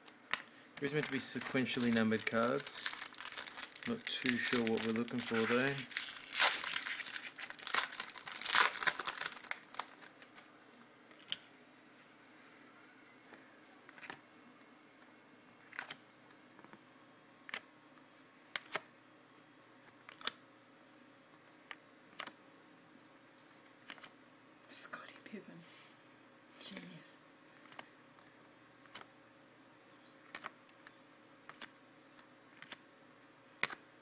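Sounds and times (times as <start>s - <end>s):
wrapper crinkling and tearing: 0.8s - 10.4s
cards clicking and tapping: 30.3s - 30.9s, 33.6s - 33.8s.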